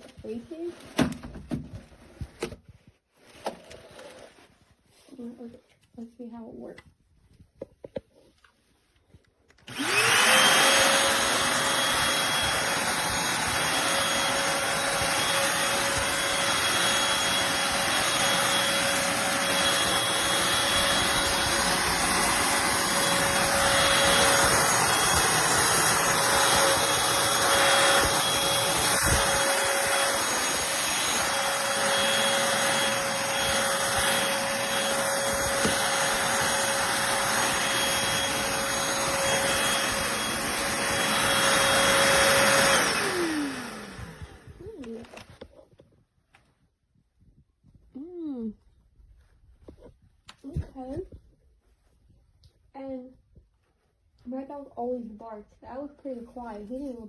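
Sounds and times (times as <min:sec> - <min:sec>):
vacuum cleaner whining: 0:09.5 - 0:45.8.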